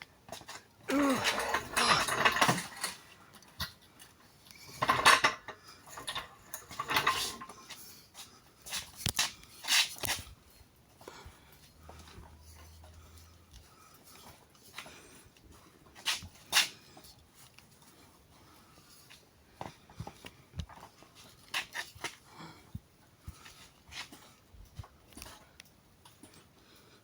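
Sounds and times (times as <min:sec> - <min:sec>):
metal jack clanking and rattling: 0:00.9 - 0:03.8, 0:04.6 - 0:07.5.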